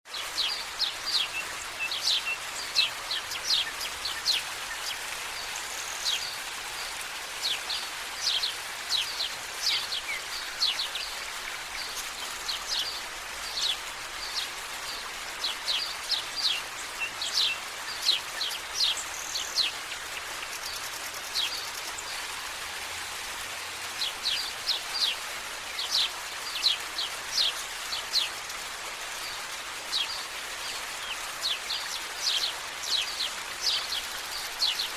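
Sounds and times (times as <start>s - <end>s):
birds chirping: 0.1s - 23.1s
steady hiss: 0.1s - 34.9s.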